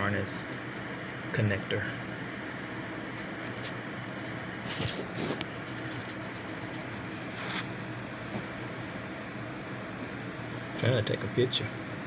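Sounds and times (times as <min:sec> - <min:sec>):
hands rustling and scraping: 0:02.4 - 0:09.1.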